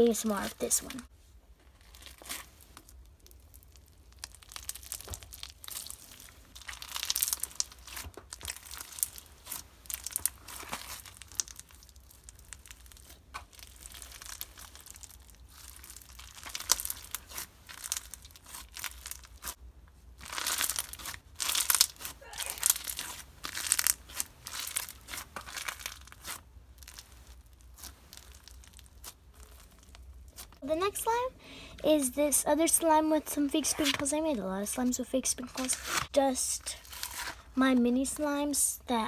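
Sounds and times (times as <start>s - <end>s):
slime crackling and popping: 1.7s - 30.7s, 36.7s - 37.5s.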